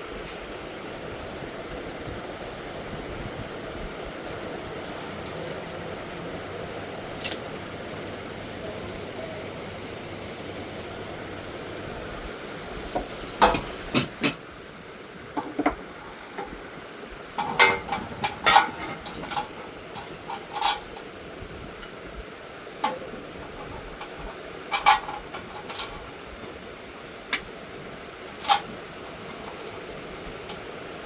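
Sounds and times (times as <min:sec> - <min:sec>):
low steady background noise: 0:00.0 - 0:31.0
metal parts clinking: 0:17.4 - 0:21.1, 0:22.8 - 0:26.6, 0:28.2 - 0:30.2.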